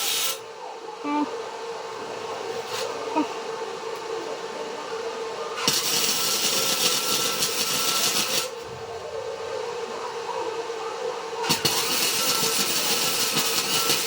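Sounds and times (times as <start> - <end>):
welder hum: 0.0 - 0.4, 5.6 - 9.4, 11.4 - 14.0
welding hiss and crackle: 0.0 - 0.4, 2.6 - 3.0, 5.6 - 8.7, 11.4 - 14.0.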